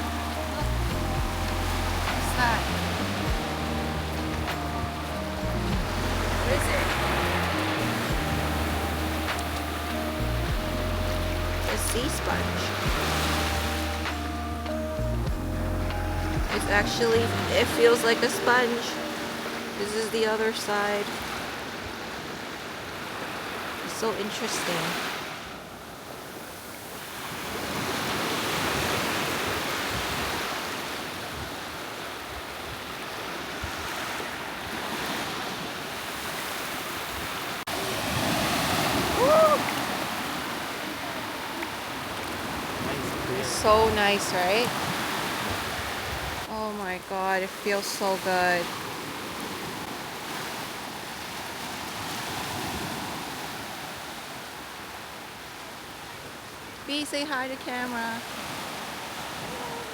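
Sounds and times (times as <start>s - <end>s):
surf breaking on beach: 0.0s - 14.7s, 16.4s - 55.0s
short rising and falling cry: 37.8s - 41.6s.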